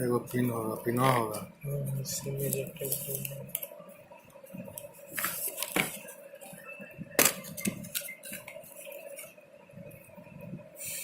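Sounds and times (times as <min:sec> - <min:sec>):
faint steady hum: 0:00.0 - 0:11.0
packaging being handled: 0:04.7 - 0:06.2.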